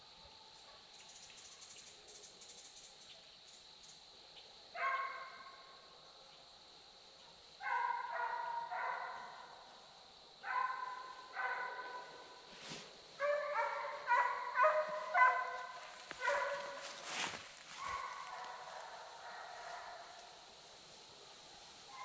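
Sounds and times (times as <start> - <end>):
hounds baying: 7.6 - 9.4, 13.2 - 20.2.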